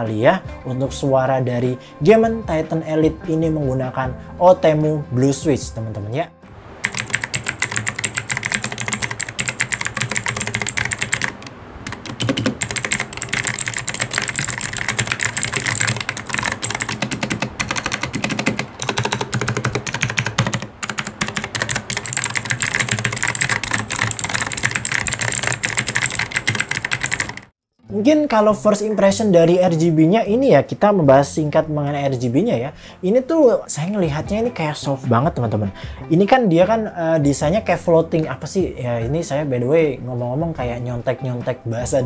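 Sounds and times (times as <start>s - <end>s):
mechanical keyboard typing: 6.8s - 27.5s.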